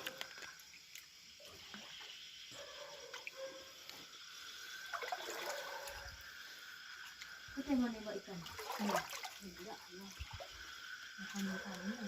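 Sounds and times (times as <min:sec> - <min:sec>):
small ticks: 0:00.0 - 0:02.0, 0:02.6 - 0:04.3, 0:06.8 - 0:07.6
water dripping and trickling: 0:00.0 - 0:12.0.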